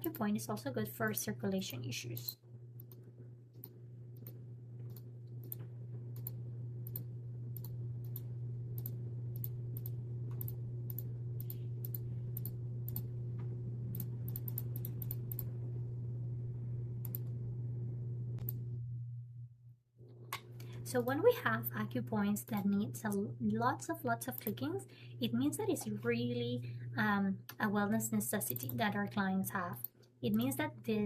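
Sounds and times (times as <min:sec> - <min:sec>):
steady low hum: 0:00.0 - 0:31.0
computer mouse clicking: 0:03.6 - 0:13.1, 0:13.9 - 0:15.5, 0:17.0 - 0:17.3, 0:28.5 - 0:28.8.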